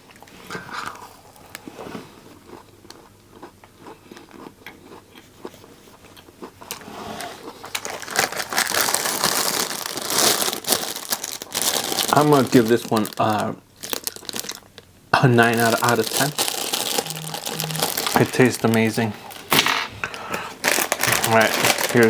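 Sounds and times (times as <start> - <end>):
person chewing crunchy snack: 0.6 - 12.1, 13.8 - 14.8, 15.5 - 19.6.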